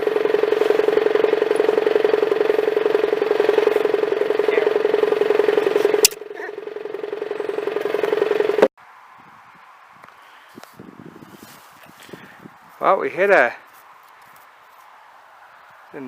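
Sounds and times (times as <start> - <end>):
engine running steadily: 0.0 - 8.7
sharp click: 6.0 - 6.2.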